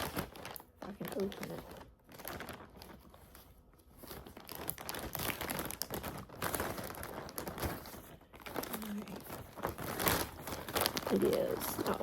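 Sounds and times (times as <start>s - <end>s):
wrapping crinkling and rustling: 0.0s - 12.0s
package being torn open: 4.1s - 12.0s.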